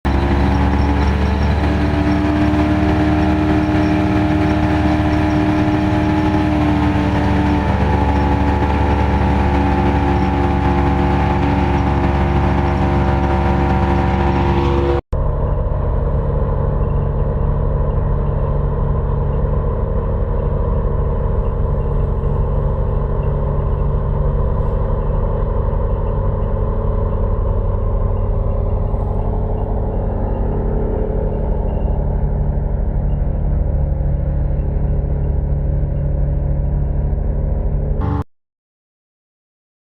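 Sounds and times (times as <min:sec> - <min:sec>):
harvesting machinery whine: 0:00.1 - 0:15.0
muffled machine sound: 0:00.1 - 0:38.2.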